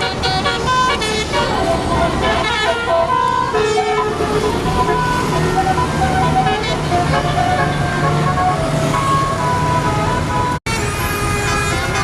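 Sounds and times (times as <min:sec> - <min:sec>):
bus engine running: 0:00.0 - 0:12.0
multi-tone air horn tune: 0:09.8 - 0:12.0.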